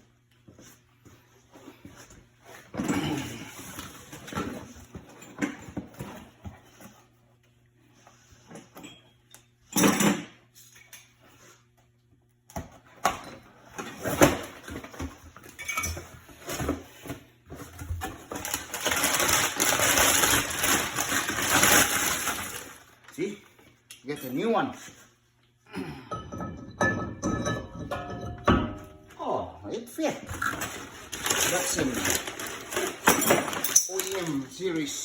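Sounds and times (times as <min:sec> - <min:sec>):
metal tools clinking: 0:31.2 - 0:34.8.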